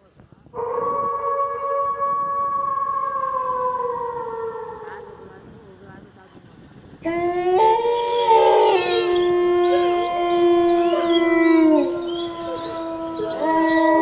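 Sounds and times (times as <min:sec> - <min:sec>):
dogs howling: 0:07.1 - 0:14.0.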